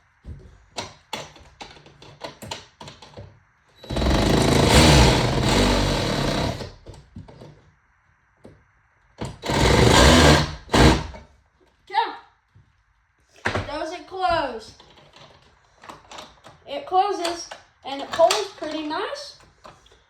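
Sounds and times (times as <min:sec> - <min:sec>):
clicks and knocks of parts: 0:00.7 - 0:03.4, 0:14.7 - 0:20.0
small motor running: 0:03.8 - 0:06.6.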